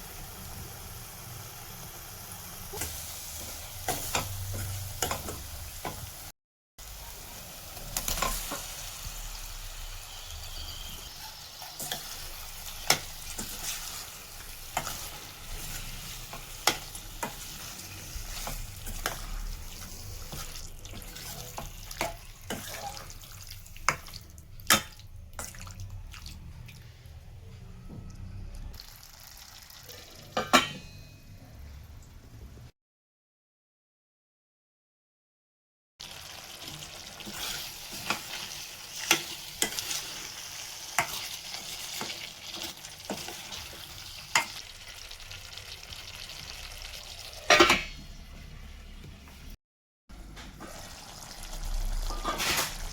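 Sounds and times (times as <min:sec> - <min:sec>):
food sizzling in a pan: 0:00.0 - 0:25.7, 0:28.8 - 0:30.9, 0:36.0 - 0:48.4, 0:50.4 - 0:52.9
spoon scraping and knocking pan: 0:02.8 - 0:06.1, 0:10.6 - 0:23.1, 0:37.2 - 0:44.6.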